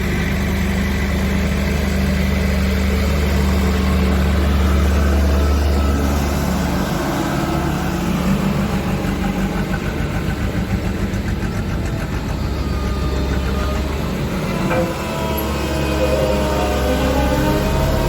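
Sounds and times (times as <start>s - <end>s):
road roller diesel engine running: 0.0s - 18.0s
heavy low hum: 15.6s - 18.0s.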